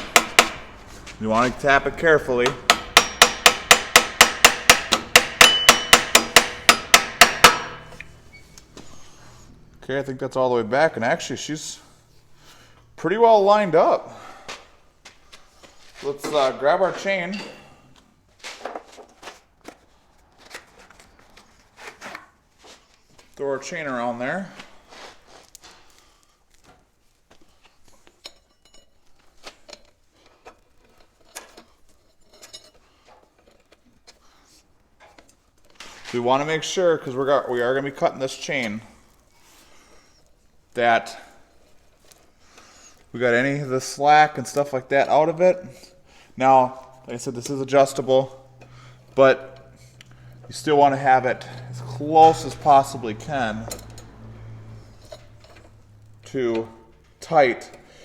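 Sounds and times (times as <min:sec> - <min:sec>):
hammer tapping metal: 0:00.0 - 0:00.8, 0:02.4 - 0:08.1.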